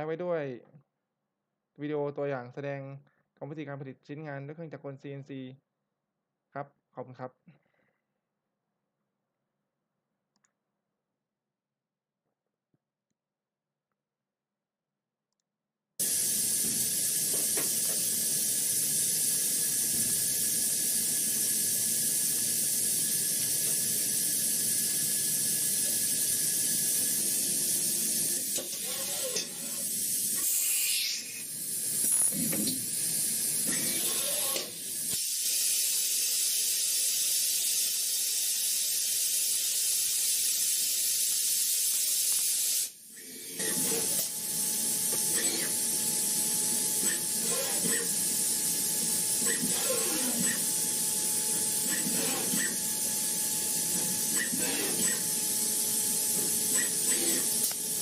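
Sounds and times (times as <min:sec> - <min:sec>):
cnc machine hissing: 0:16.0 - 0:58.0.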